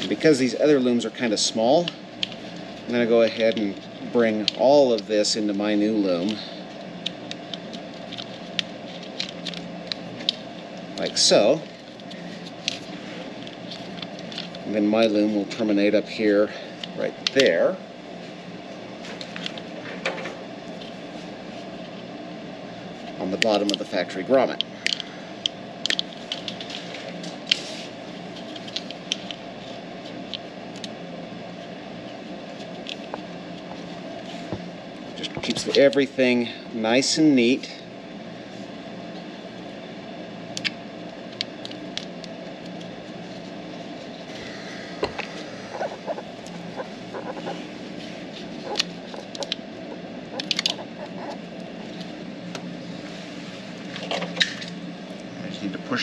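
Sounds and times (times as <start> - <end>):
steady low hum: 0.0 - 56.0
clicks and rustles of wiring: 1.6 - 15.7, 19.0 - 22.0, 23.0 - 31.0, 45.0 - 49.7, 50.3 - 55.3.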